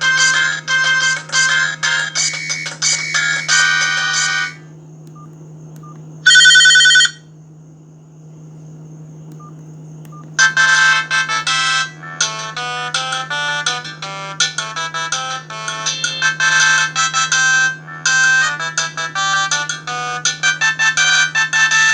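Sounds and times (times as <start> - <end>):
steady low hum: 0.0 - 21.9
polyphonic ringtone melody: 10.4 - 21.9.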